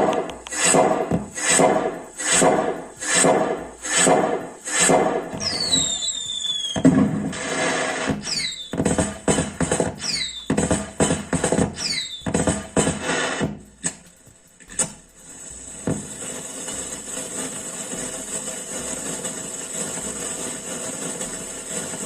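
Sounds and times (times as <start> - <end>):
high falling whistles: 0.0 - 8.9, 9.9 - 10.5, 11.7 - 12.5
firecracker burst: 0.0 - 22.0
rhythmic rushing whooshes: 0.0 - 22.0.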